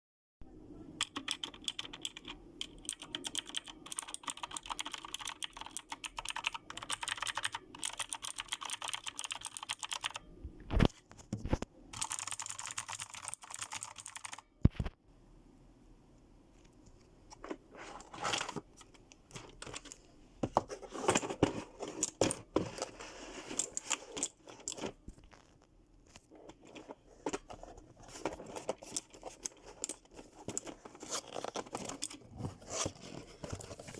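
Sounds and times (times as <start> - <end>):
clicky keyboard typing: 1.0 - 10.9, 11.9 - 14.9.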